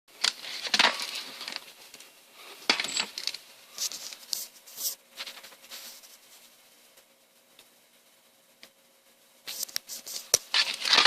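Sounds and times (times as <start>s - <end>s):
small objects clinking: 2.7s - 3.4s.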